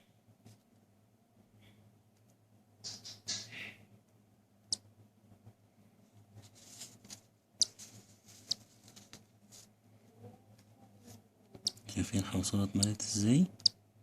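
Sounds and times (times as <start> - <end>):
soft hissy rustles: 6.0 - 9.8.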